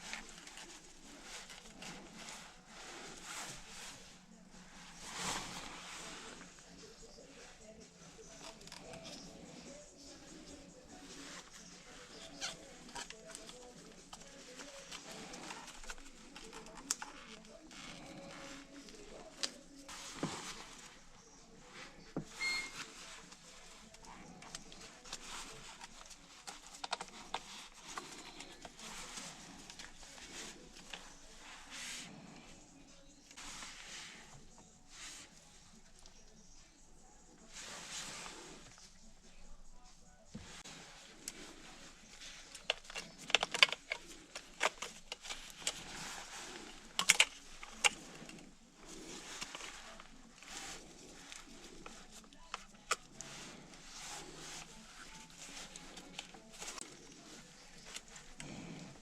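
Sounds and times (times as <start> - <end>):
parts and tools clicking: 41.2 - 56.8
hand tools clicking and tapping: 42.1 - 48.4.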